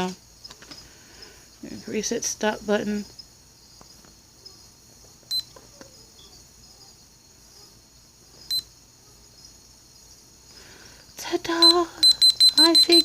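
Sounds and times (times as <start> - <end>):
kitchen timer beeps: 11.6 - 13.0.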